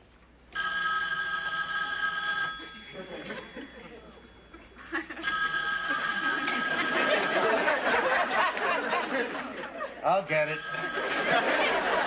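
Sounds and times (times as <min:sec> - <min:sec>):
telephone bell ringing: 0:00.6 - 0:08.0, 0:10.3 - 0:12.0.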